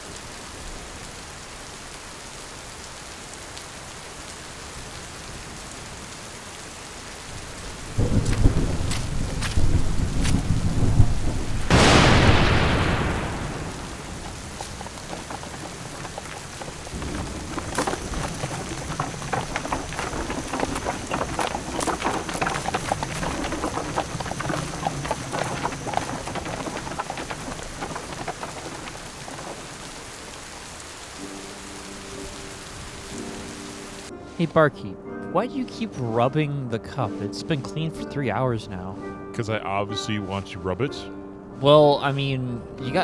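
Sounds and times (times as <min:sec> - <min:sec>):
rain patter: 0:00.0 - 0:34.6
thunder clap rumbling: 0:07.3 - 0:30.9.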